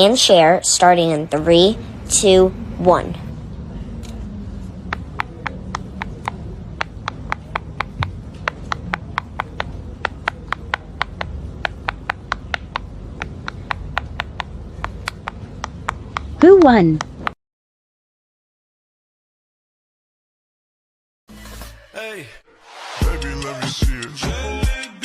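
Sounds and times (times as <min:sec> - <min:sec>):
low steady hum: 0:00.0 - 0:17.4
fidget toy bubbles popping: 0:04.9 - 0:17.4.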